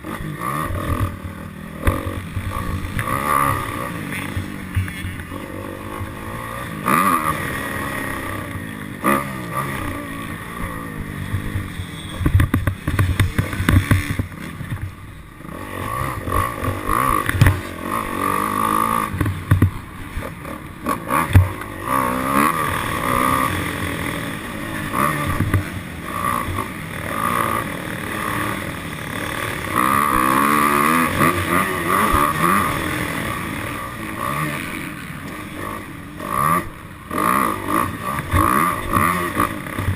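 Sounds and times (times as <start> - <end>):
dirt bike engine revving: 0.0 - 39.9
thumps: 11.4 - 15.0, 16.6 - 17.7, 19.1 - 19.9.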